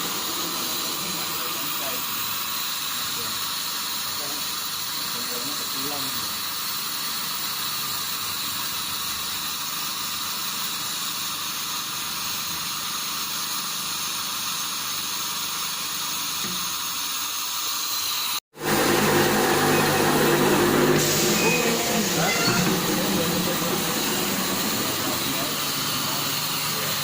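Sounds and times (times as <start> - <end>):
steady hiss: 0.0 - 18.4, 20.8 - 27.0
low machine hum: 18.6 - 27.0.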